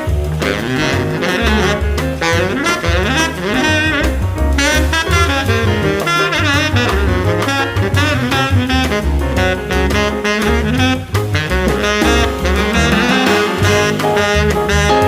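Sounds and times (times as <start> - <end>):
jazz saxophone with bass and drums: 0.0 - 15.0.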